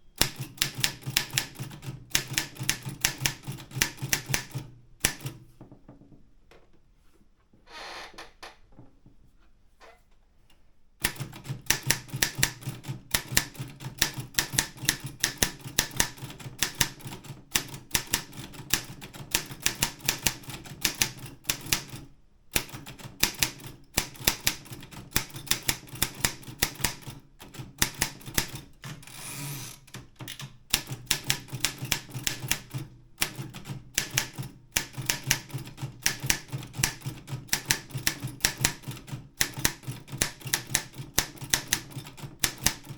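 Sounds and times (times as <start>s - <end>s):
typewriter keystrikes: 0.2s - 5.4s, 11.0s - 22.0s, 22.6s - 42.9s
typewriter carriage rattling slide: 28.8s - 30.4s.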